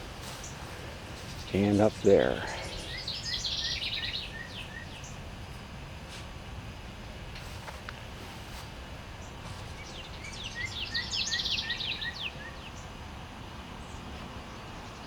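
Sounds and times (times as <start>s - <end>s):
songbird singing: 0.0s - 5.3s, 9.2s - 15.0s
low outdoor background noise: 0.0s - 15.0s.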